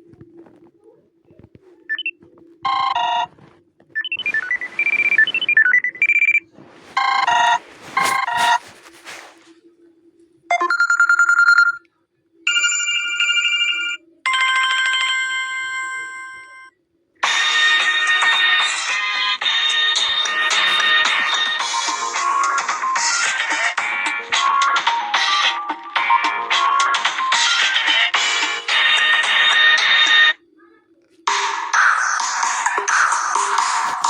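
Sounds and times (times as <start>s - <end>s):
phone ringtone chimes: 12.5s - 16.4s.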